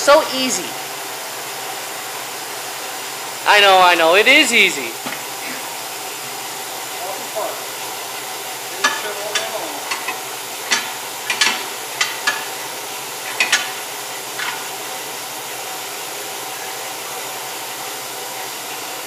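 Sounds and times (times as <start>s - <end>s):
steady hiss: 0.0s - 17.4s
metal clicks and clanks of tire machine: 8.8s - 12.5s, 13.3s - 13.8s.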